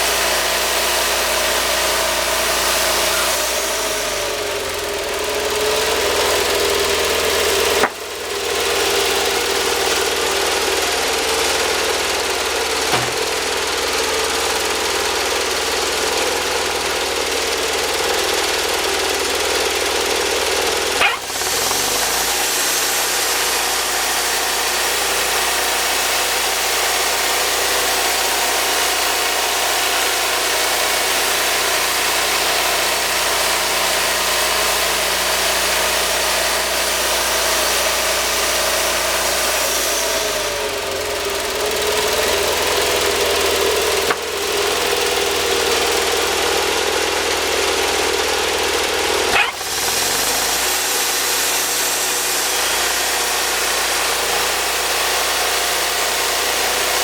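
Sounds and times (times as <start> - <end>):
sawmill engine running: 0.0 - 57.0
sharp click: 21.0 - 21.3.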